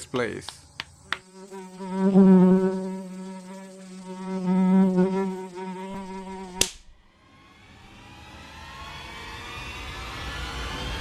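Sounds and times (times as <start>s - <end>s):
mosquito buzzing: 1.0s - 6.7s
sharp slap: 6.5s - 7.0s.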